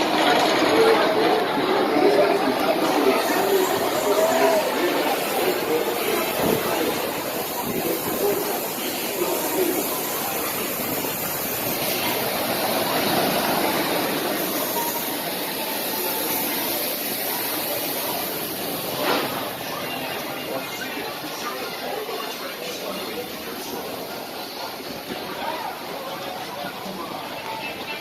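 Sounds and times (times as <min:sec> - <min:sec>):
faint voices of riders: 0:00.0 - 0:28.0
roller coaster wheels rushing on rail: 0:00.0 - 0:28.0.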